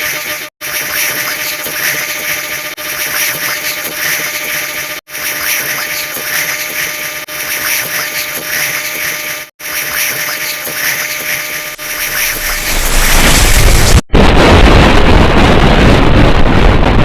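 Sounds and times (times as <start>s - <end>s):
buzzing wash of sound effects: 10.8s - 14.1s.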